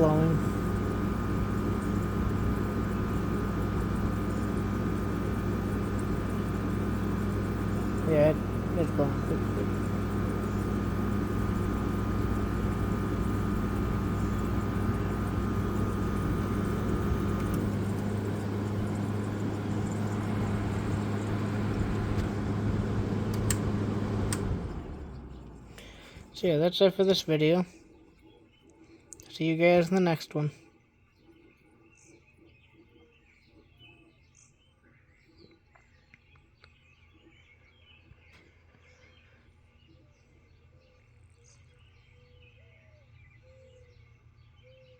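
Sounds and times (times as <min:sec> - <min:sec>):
fan rushing air: 0:00.0 - 0:27.6
compressor humming: 0:00.0 - 0:27.7
faint bird chirps: 0:30.6 - 0:44.9.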